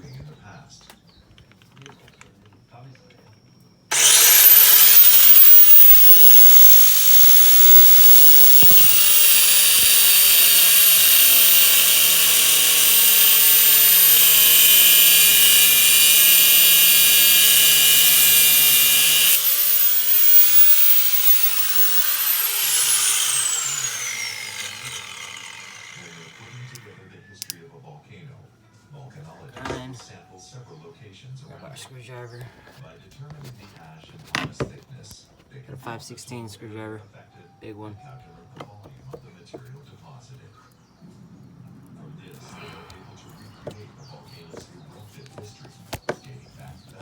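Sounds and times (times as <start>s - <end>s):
angle grinder grinding steel: 3.9s - 27.0s.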